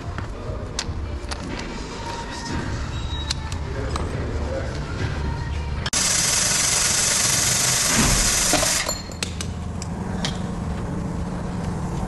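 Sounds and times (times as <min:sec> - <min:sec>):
pneumatic impact wrench running: 0:05.9 - 0:09.0.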